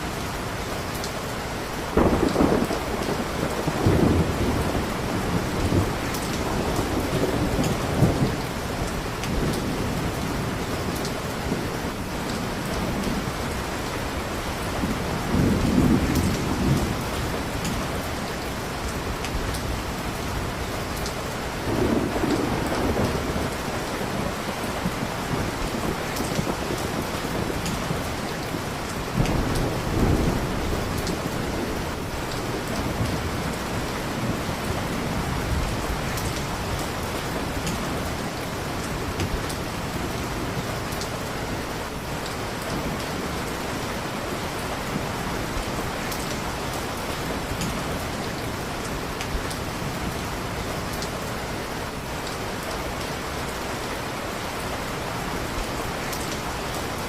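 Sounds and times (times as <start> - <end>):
heavy rain: 0.0 - 57.0
thunder rumble: 1.9 - 13.6, 14.2 - 20.9, 21.6 - 41.3.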